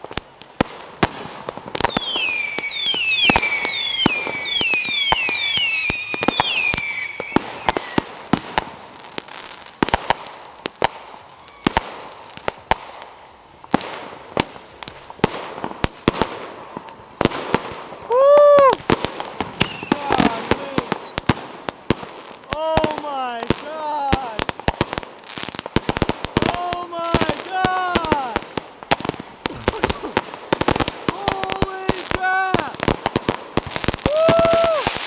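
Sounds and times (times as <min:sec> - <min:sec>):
firework bangs: 0:00.0 - 0:35.0
falling firework whistles: 0:01.9 - 0:08.2, 0:19.6 - 0:21.3.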